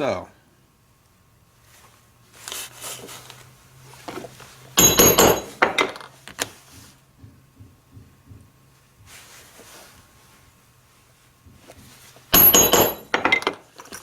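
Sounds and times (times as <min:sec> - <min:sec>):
mallet striking metal punch: 0:04.8 - 0:05.8.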